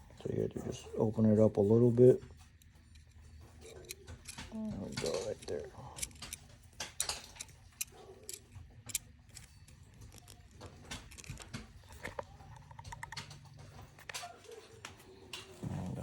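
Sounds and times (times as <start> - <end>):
metallic clicks of pliers and ring: 2.6 - 12.2.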